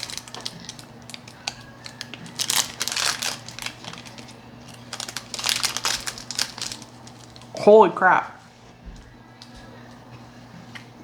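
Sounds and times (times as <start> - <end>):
plastic candy wrapper crinkling: 0.0 - 7.6.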